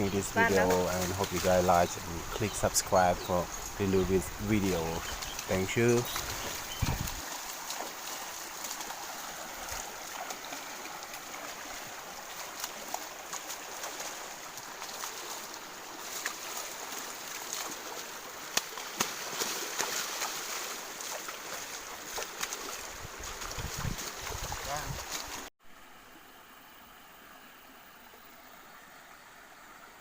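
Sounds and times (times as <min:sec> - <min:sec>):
stream water flowing: 0:00.0 - 0:30.0
small clicks and splashes: 0:05.0 - 0:25.5.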